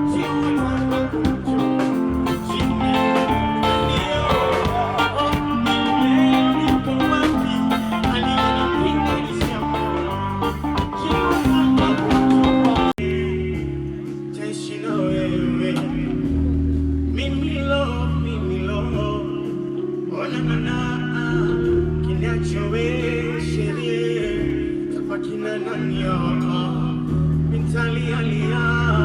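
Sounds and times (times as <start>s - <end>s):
music with plucked guitar: 0.0s - 14.4s
heavy bass line: 0.0s - 19.6s, 20.4s - 29.0s.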